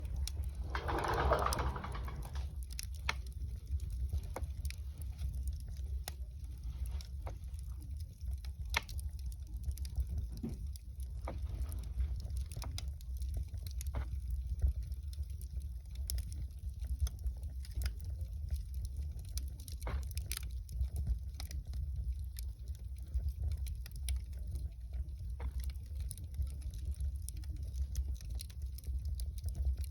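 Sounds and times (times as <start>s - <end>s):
low rumble: 0.0s - 2.9s
wood fire crackling and popping: 0.0s - 29.9s.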